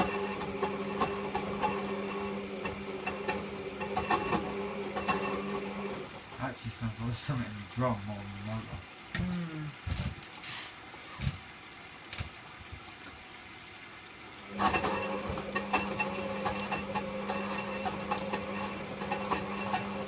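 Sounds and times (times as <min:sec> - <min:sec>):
washing machine motor humming: 0:00.0 - 0:09.9, 0:14.4 - 0:20.0
clicks and rattles in drum: 0:14.6 - 0:20.0.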